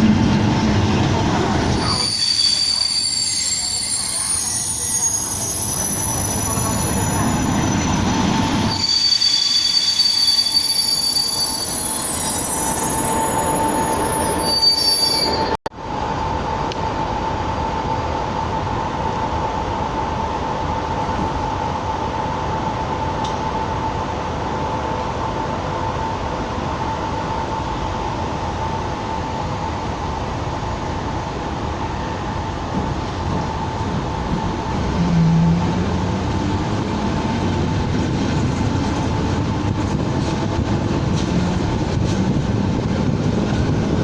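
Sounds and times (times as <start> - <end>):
train running with whine: 0.0 - 44.0
train wheels squealing: 1.7 - 15.6.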